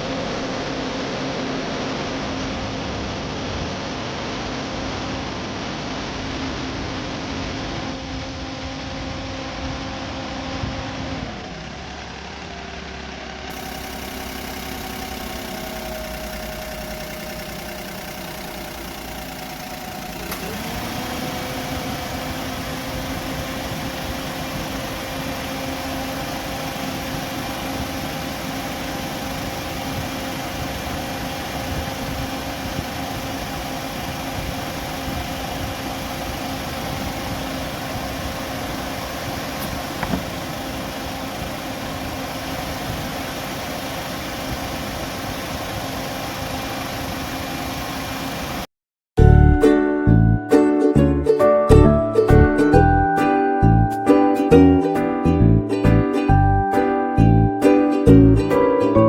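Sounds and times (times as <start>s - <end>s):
car engine idling: 6.6s - 50.4s.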